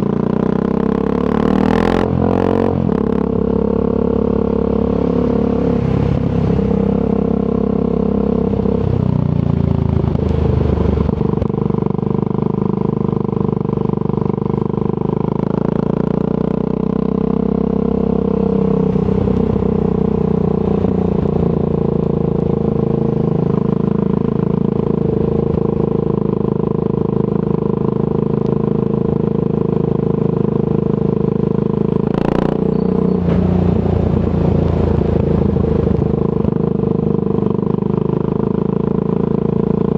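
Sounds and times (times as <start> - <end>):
motorcycle engine riding: 0.0 - 39.9.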